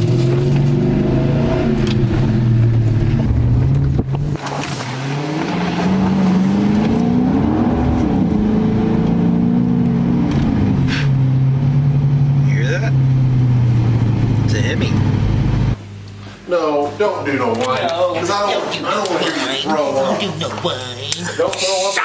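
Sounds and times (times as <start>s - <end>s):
car engine accelerating: 0.0s - 16.1s.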